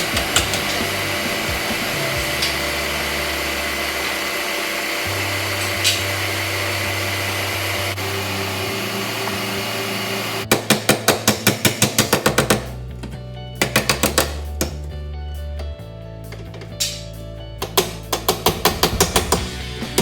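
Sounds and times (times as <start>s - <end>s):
steady whirring noise: 0.0s - 10.4s
sustained bass notes: 0.0s - 10.4s, 18.4s - 20.0s.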